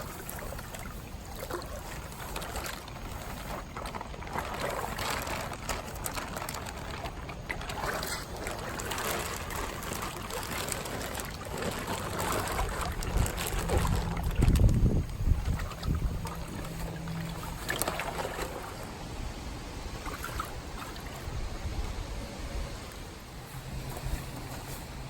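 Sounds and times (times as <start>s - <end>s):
water sloshing in a pond: 0.0s - 25.0s
wind buffeting microphone: 5.0s - 25.0s.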